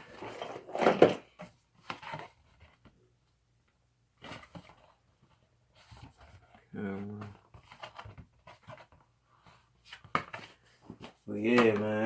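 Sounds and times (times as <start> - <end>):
packaging rustling and knocking: 0.0 - 2.9.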